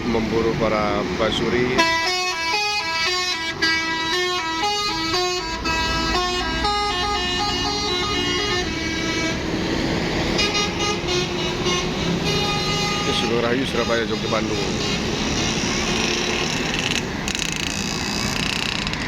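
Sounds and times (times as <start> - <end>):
bus horn playing a tune: 1.8 - 16.9.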